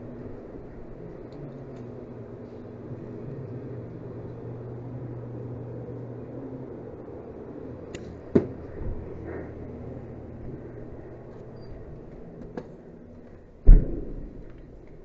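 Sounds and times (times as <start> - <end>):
low hum: 0.0 - 15.0
heavy thump: 13.6 - 14.5.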